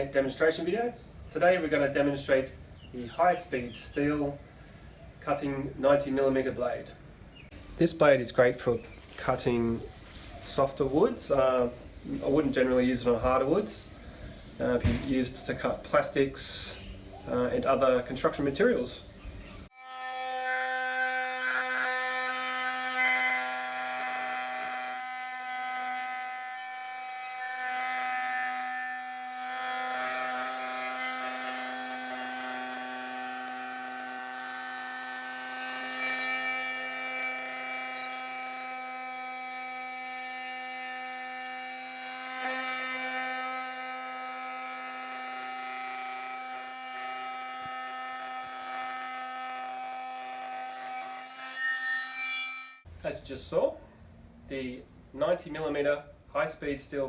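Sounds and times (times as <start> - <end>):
multi-tool cutting wood: 19.7 - 52.9.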